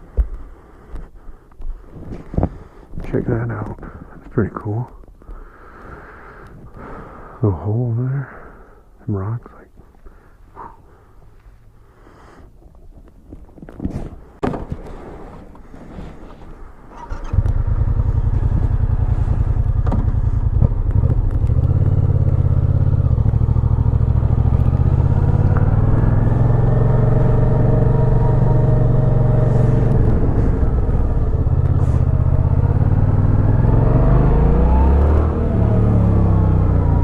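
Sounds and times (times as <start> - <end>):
motorcycle engine running: 16.9 - 37.0.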